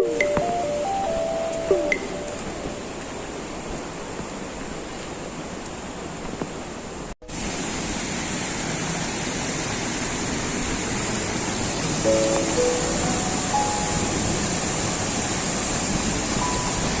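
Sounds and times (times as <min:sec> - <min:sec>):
waterfall rushing: 0:07.3 - 0:17.0.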